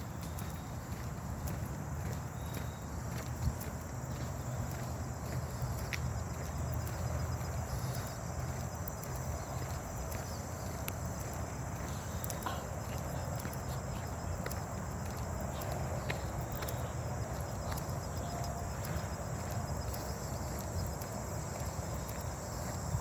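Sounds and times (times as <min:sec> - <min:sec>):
footsteps on a trail: 0:00.0 - 0:23.0
heavy breathing: 0:11.9 - 0:14.0.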